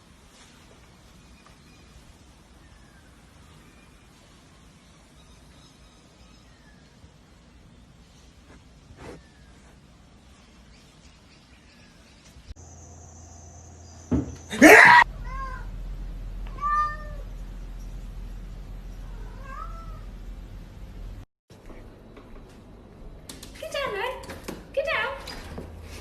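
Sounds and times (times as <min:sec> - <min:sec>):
cat harsh cry: 0:14.6 - 0:15.7, 0:16.5 - 0:17.3, 0:19.1 - 0:20.1
cat meowing: 0:14.8 - 0:15.7, 0:16.5 - 0:17.3, 0:19.1 - 0:20.1.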